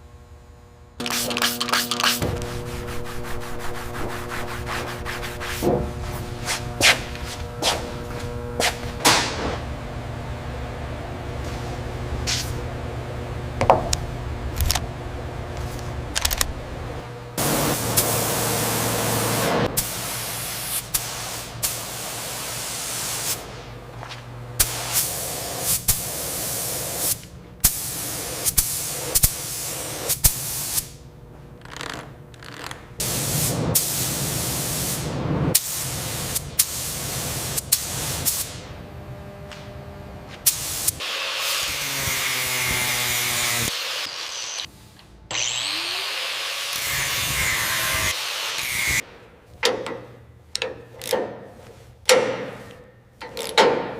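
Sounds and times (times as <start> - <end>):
sharp clicks and knocks: 49.6 - 53.9.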